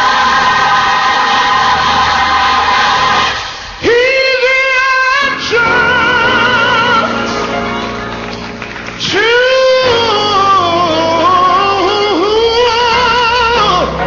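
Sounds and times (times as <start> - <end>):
person singing gospel: 0.0 - 14.0
instrumental backing: 5.2 - 14.0.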